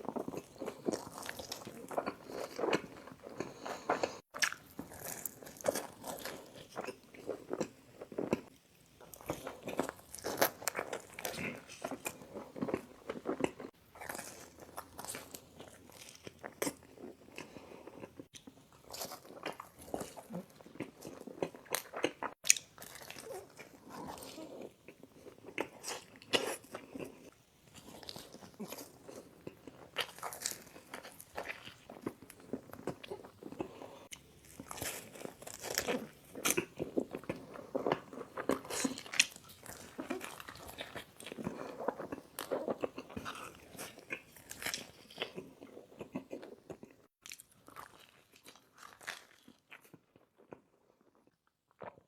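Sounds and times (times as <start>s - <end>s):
chewing: 0.0s - 52.0s.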